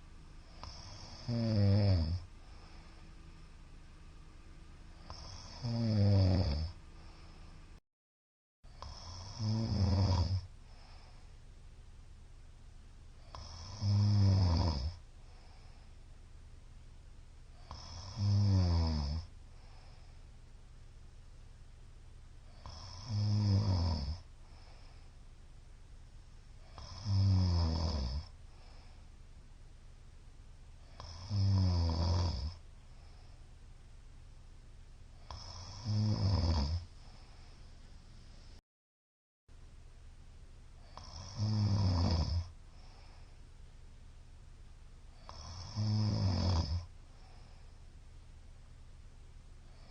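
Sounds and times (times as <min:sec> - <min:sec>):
man snoring loudly: 0:00.5 - 0:03.1, 0:05.0 - 0:07.3, 0:08.7 - 0:10.5, 0:13.2 - 0:15.0, 0:17.6 - 0:19.3, 0:22.6 - 0:24.3, 0:26.6 - 0:28.3, 0:30.9 - 0:32.6, 0:35.2 - 0:36.9, 0:40.8 - 0:42.5, 0:45.2 - 0:46.9.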